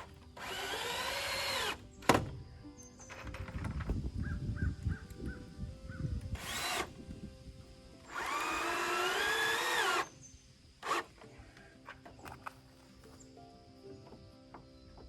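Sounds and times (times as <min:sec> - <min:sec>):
power drill running: 0:00.0 - 0:01.8, 0:06.4 - 0:07.0, 0:08.0 - 0:10.1, 0:10.8 - 0:11.1.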